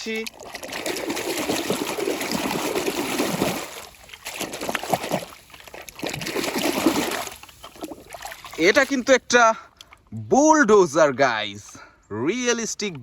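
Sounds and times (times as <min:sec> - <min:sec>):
water splashing and trickling: 0:00.0 - 0:10.1.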